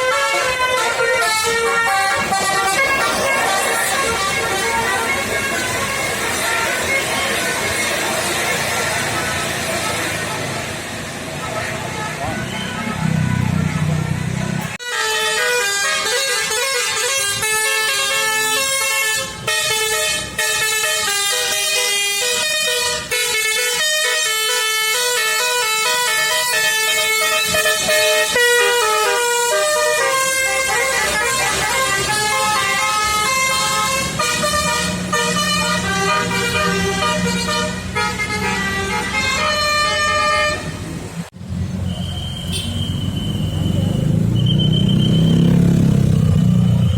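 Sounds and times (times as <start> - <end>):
multi-tone horns playing a melody: 0.0 - 9.7, 14.8 - 41.0.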